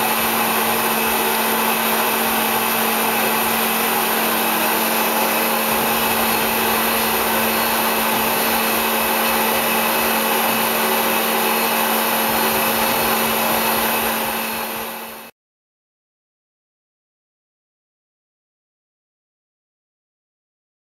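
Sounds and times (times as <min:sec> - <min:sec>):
grinder motor whirring: 0:00.0 - 0:15.3.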